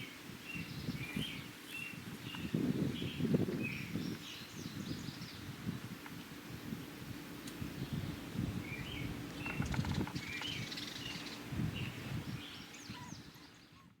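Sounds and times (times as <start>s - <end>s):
wind rumble on microphone: 0.1s - 14.0s
birds chirping: 6.4s - 13.8s.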